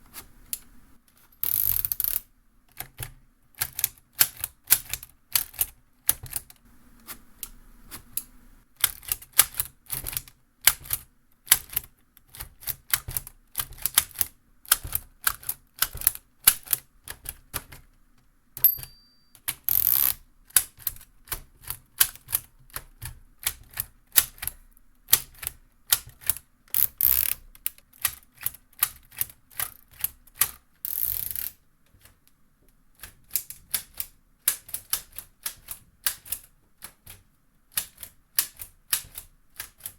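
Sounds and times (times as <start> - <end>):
typewriter carriage return rasp: 1.2 - 2.2, 19.4 - 24.5, 25.1 - 32.2
small bell ringing: 18.6 - 19.4
typewriter keys clacking: 33.0 - 39.9.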